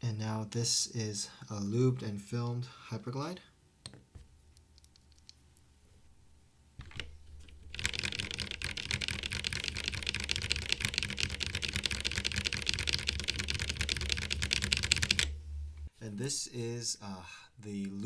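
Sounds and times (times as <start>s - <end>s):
mechanical keyboard typing: 6.8s - 15.4s.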